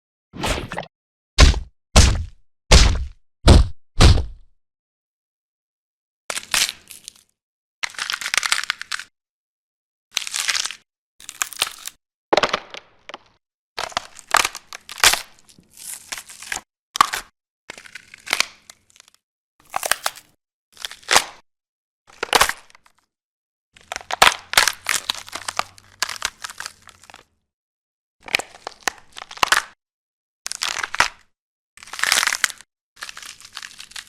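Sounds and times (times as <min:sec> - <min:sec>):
crunching and cracking gore hits: 0:00.4 - 0:04.5, 0:06.3 - 0:09.1, 0:10.2 - 0:21.4, 0:28.2 - 0:29.8, 0:30.5 - 0:34.0.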